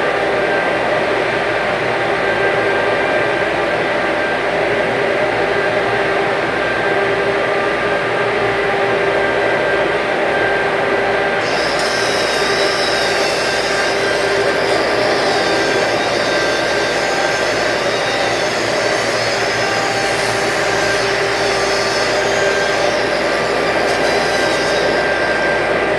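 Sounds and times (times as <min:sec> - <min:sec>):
constant hum with tones: 0:00.0 - 0:25.9
welding arc hiss and crackle: 0:11.4 - 0:25.9.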